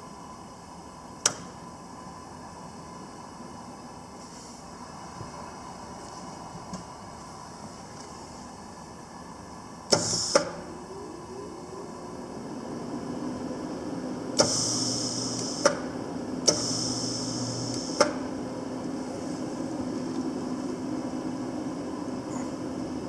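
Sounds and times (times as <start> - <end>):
welding machine steady hum: 0.0 - 23.0
welder switch click: 1.2 - 1.5
welder bursts hissing: 9.9 - 10.5.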